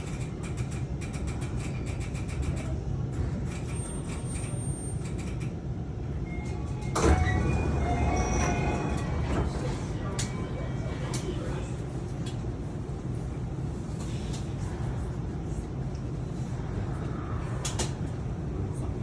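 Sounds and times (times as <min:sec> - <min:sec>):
train low hum: 0:00.0 - 0:19.0
sliding doors rushing: 0:06.6 - 0:10.5.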